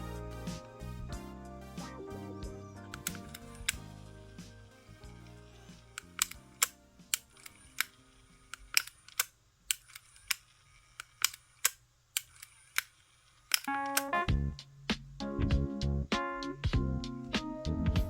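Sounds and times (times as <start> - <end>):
background music: 0.0 - 8.3, 13.7 - 18.0.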